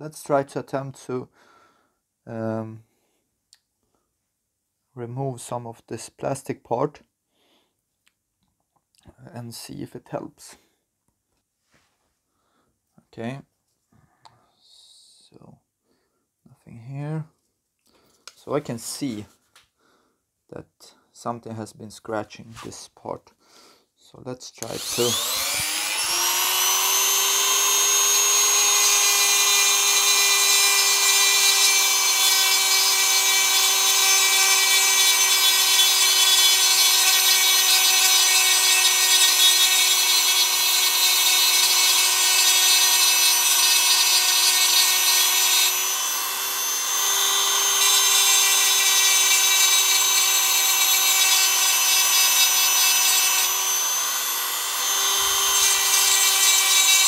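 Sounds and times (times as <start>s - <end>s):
rotary tool grinding plastic: 24.6s - 57.0s.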